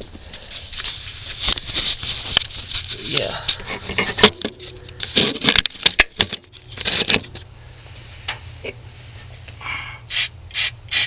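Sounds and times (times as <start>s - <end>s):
aerosol can spraying: 10.1s - 11.0s.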